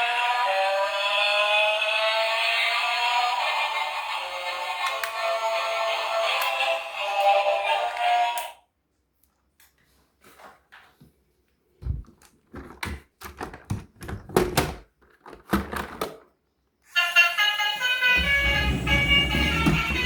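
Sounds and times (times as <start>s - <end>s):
background music: 17.0s - 20.0s.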